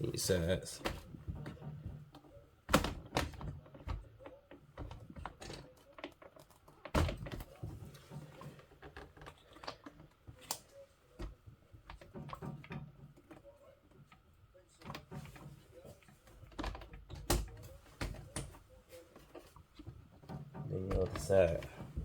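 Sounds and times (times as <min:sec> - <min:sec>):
plastic body thunks: 0:00.8 - 0:04.2, 0:20.3 - 0:22.0
plastic clicks and knocks: 0:00.8 - 0:22.0.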